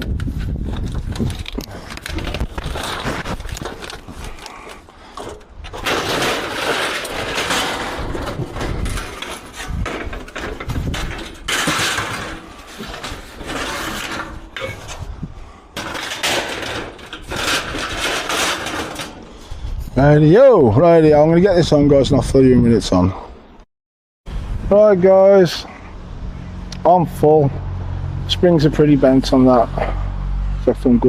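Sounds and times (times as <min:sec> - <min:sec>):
sheet metal scraping and clanking: 0:00.4 - 0:19.8.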